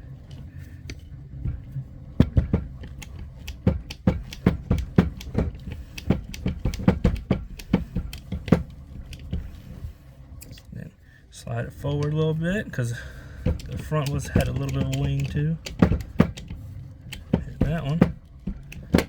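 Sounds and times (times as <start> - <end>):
crimping tool clicking: 13.5 - 16.5.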